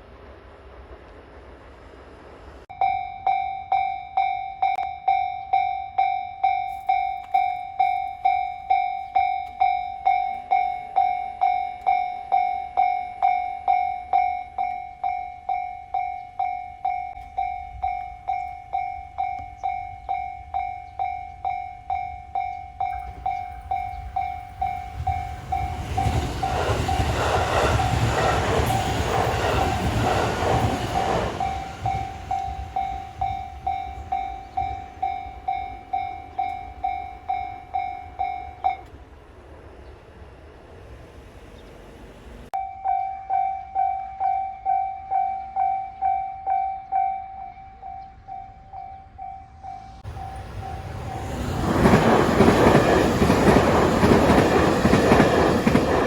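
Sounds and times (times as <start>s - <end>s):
level-crossing bell clanging: 2.6s - 39.0s
train rushing past: 22.8s - 42.5s, 49.5s - 56.0s.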